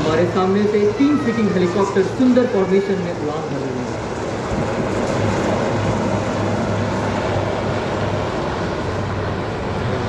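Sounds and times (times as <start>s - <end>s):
helicopters flying past: 0.0s - 10.0s.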